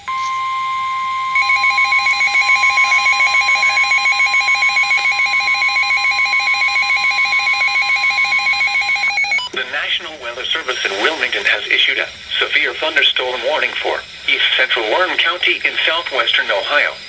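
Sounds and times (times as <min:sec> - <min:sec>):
shrill trilling alarm tone: 0:00.0 - 0:11.9.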